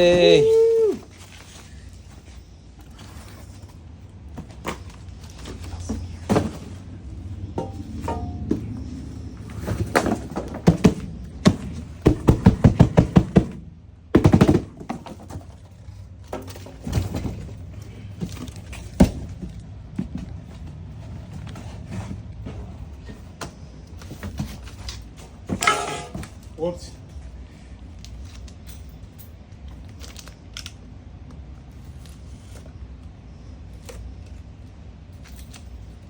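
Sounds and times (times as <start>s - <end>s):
items and packaging rustling: 0.0s - 36.0s
fast sharp knocks: 10.6s - 13.6s.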